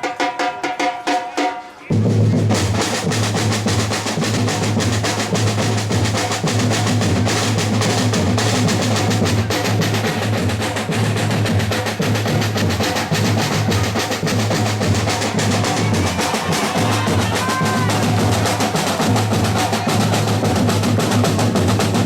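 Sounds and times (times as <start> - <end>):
fast continuous drumming: 0.0 - 22.0
pitched music: 12.2 - 22.0.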